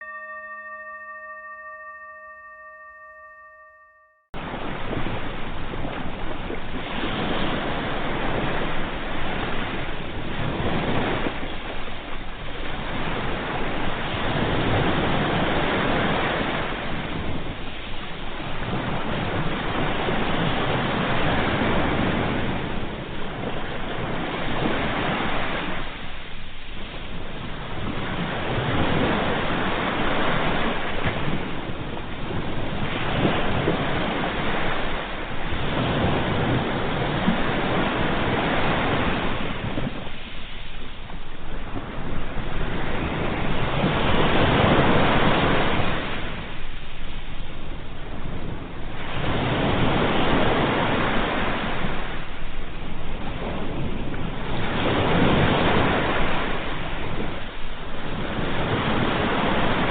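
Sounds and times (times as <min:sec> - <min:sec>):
ringing tone with overtones: 0:00.0 - 0:04.4
sea waves breaking on shore: 0:04.4 - 0:59.9.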